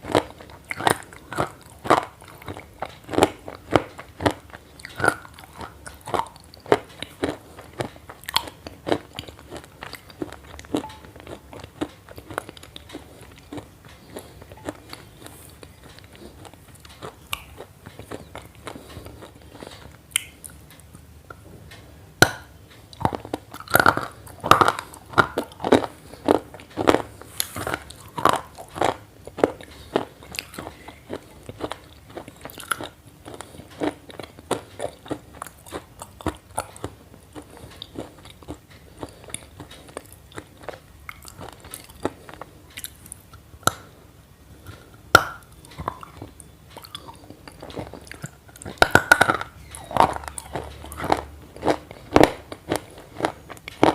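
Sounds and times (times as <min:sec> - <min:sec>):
crunching and chewing: 0:00.0 - 0:53.9.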